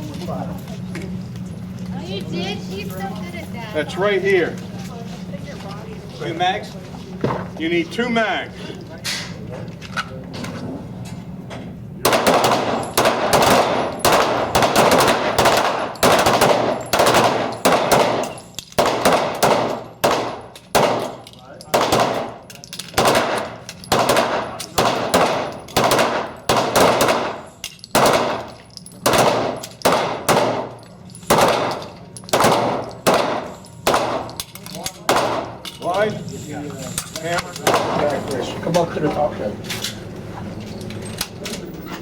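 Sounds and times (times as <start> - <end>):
handguns firing: 12.0 - 35.6, 37.6 - 38.0.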